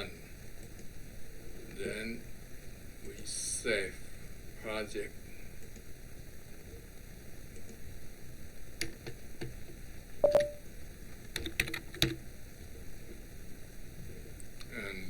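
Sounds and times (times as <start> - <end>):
steady hiss: 0.0 - 6.6, 13.4 - 15.0.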